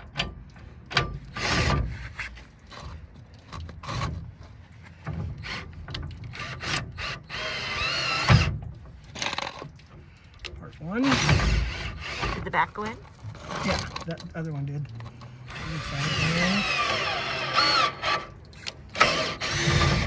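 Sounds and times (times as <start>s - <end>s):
cordless drill running: 6.3s - 8.5s, 11.0s - 12.6s, 15.4s - 20.0s.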